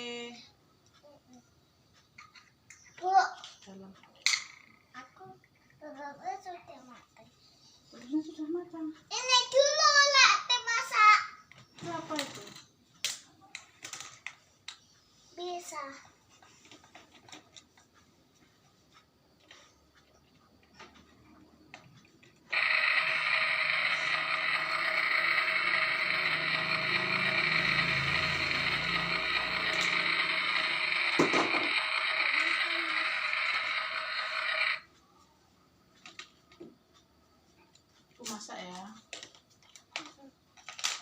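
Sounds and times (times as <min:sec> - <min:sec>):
toy mechanical buzz: 0:21.7 - 0:34.9.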